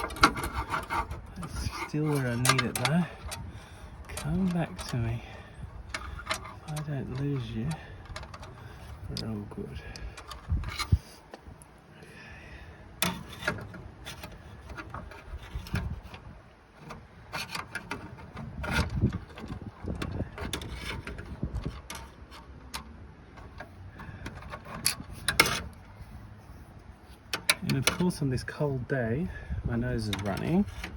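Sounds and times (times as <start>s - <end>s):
tools and metal parts scraping: 0.0s - 11.4s, 13.0s - 28.6s, 29.3s - 30.9s
small clicks and knocks: 5.9s - 9.3s, 13.0s - 25.9s.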